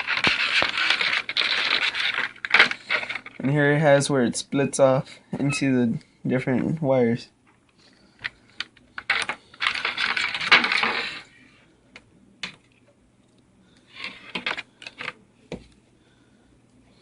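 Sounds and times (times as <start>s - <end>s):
plastic packaging crinkling: 0.0s - 3.5s, 8.6s - 11.3s.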